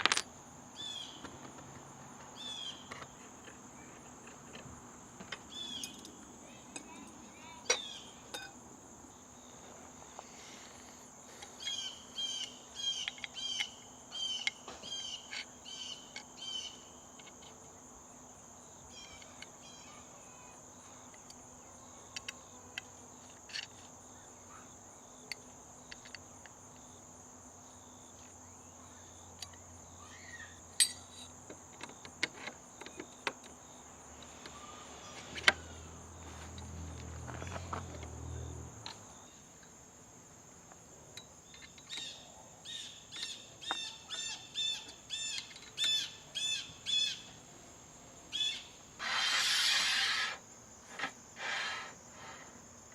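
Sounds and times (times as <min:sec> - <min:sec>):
bird chirping: 0:00.8 - 0:01.2, 0:02.4 - 0:03.0, 0:05.5 - 0:06.0, 0:07.4 - 0:08.2, 0:11.6 - 0:16.9, 0:41.5 - 0:47.4, 0:48.3 - 0:48.8
high-pitched insect drone: 0:48.3 - 0:52.5.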